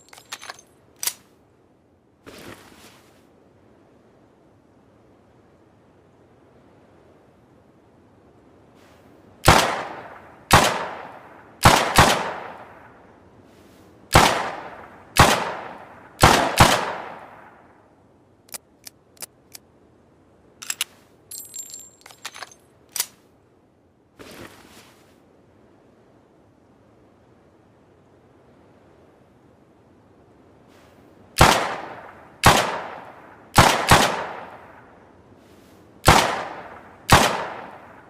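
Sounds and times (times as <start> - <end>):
metallic jingling rattle: 0.0 - 0.7, 20.6 - 22.7
light clicks: 20.6 - 23.2.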